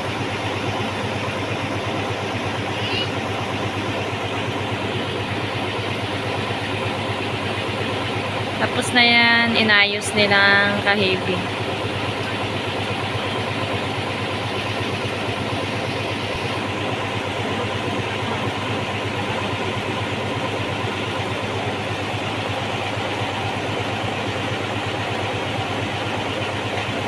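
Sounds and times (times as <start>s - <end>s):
small engine running: 0.0s - 27.0s.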